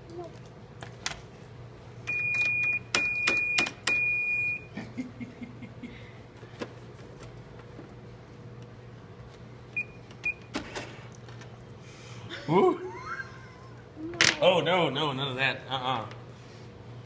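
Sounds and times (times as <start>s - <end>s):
cash register beeps: 2.1s - 4.7s, 9.8s - 10.8s.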